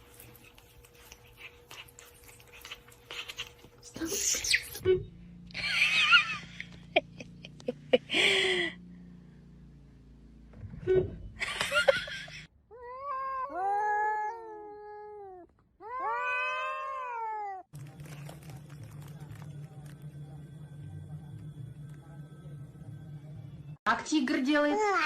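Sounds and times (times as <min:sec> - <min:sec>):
cat meowing: 0:12.7 - 0:17.6.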